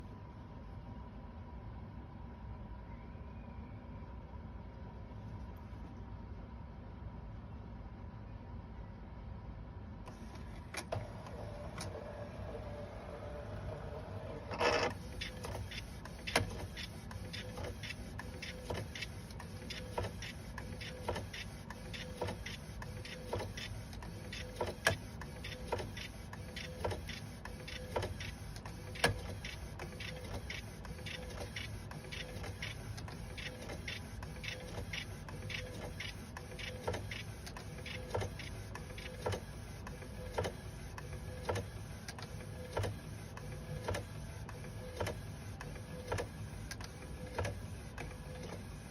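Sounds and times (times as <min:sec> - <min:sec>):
printer low hum: 0:09.8 - 0:48.9
printer mechanism clicking: 0:10.1 - 0:12.1, 0:14.4 - 0:48.7.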